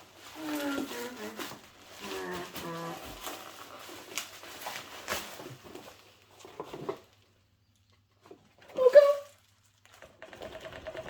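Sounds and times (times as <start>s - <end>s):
packaging rustling: 0.0s - 7.3s.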